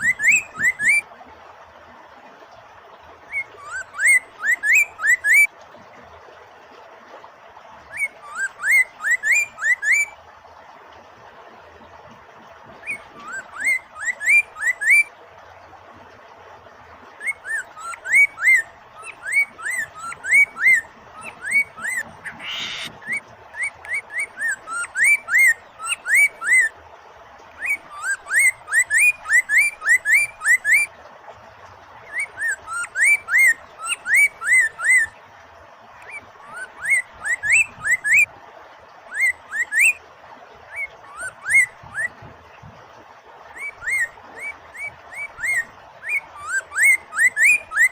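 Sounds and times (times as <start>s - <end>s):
bird singing whistled notes: 0.0s - 1.0s, 3.3s - 5.5s, 7.9s - 10.2s, 17.2s - 26.7s, 27.6s - 30.9s, 32.1s - 35.1s, 36.1s - 38.3s, 40.8s - 42.1s, 44.8s - 47.9s
flowing water: 0.0s - 47.9s
harsh bird rasp: 21.5s - 23.0s.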